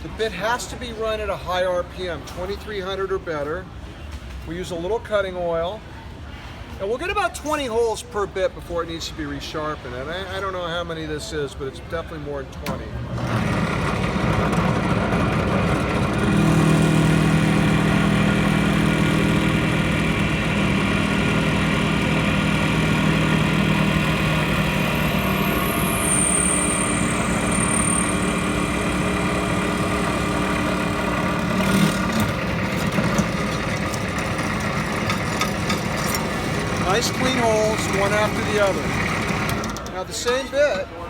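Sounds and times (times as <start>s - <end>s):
electric drill drilling metal: 13.3s - 39.9s
high whine: 14.5s - 39.7s.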